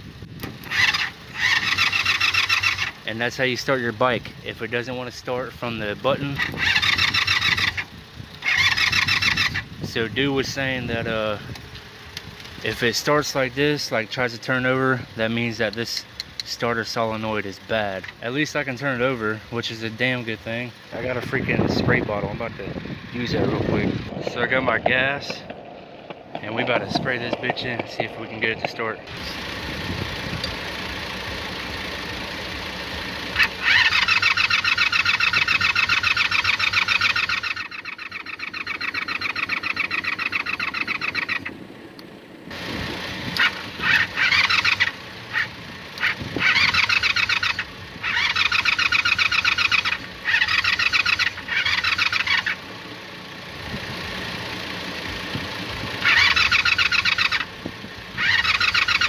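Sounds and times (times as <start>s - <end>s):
motorcycle starter motor cranking: 0.3s - 3.3s, 5.8s - 13.8s, 33.3s - 52.6s, 55.1s - 59.0s.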